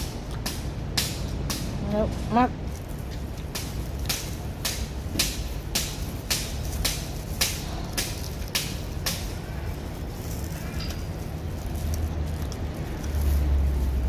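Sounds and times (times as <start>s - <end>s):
chewing crunchy food: 6.5s - 14.0s.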